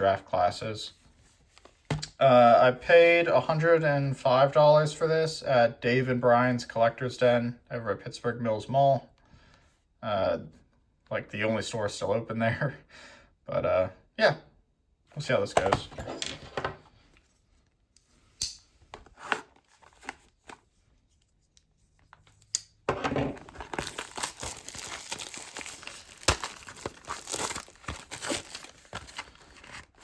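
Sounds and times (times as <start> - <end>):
wrapping crinkling: 23.3 - 30.0
tape ripping: 23.4 - 30.0.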